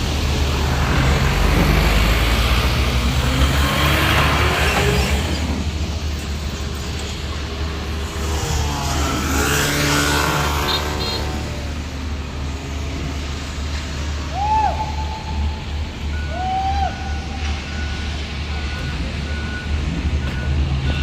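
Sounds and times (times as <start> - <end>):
passing vehicle engine: 0.0 - 14.4
traffic rumble: 0.0 - 21.0.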